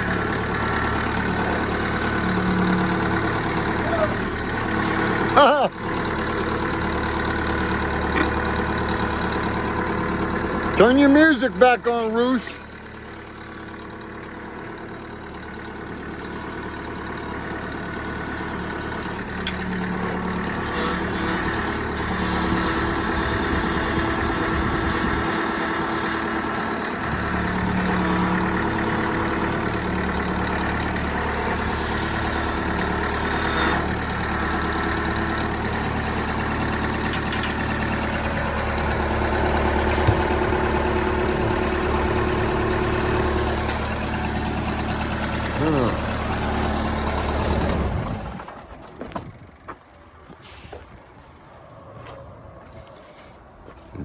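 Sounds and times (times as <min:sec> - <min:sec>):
truck engine running: 0:00.0 - 0:54.0.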